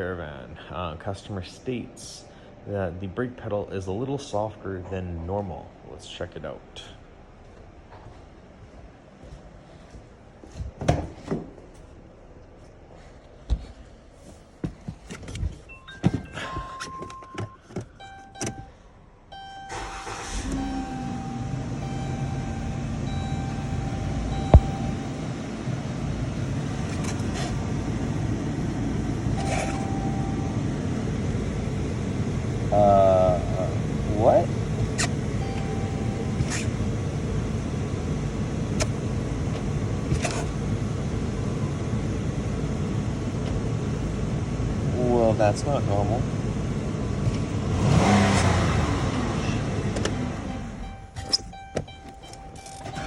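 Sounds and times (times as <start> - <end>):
car engine idling: 17.5 - 53.0
car door knocks and clunks: 24.4 - 25.0
short thin beep: 29.4 - 30.4.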